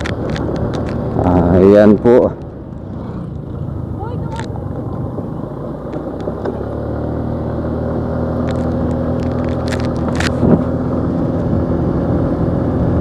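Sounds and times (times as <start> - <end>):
motorcycle engine running: 2.5 - 13.0.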